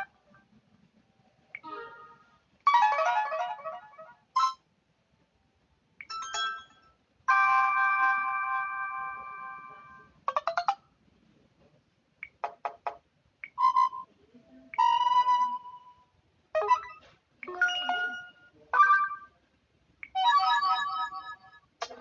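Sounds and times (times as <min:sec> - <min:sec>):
phone notification tones: 0:06.0 - 0:10.8, 0:16.6 - 0:19.3.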